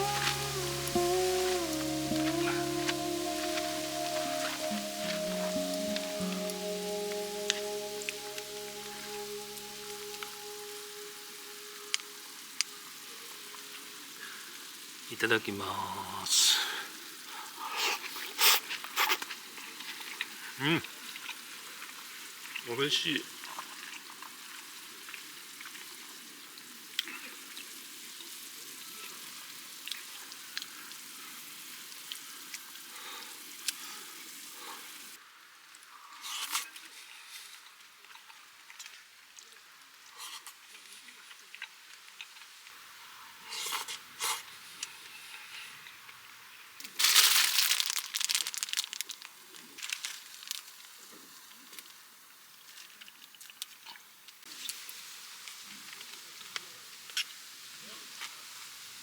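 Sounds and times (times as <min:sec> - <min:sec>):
pot simmering and sizzling: 0:00.0 - 0:16.3, 0:16.9 - 0:59.0
crinkling and crumpling: 0:46.8 - 0:51.0.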